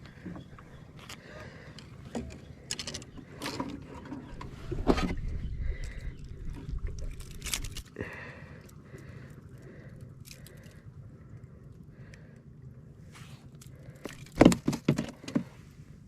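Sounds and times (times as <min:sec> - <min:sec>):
knocks and rattles in a boat: 0:00.0 - 0:07.6, 0:14.0 - 0:15.7
wind rumble on microphone: 0:04.2 - 0:07.9.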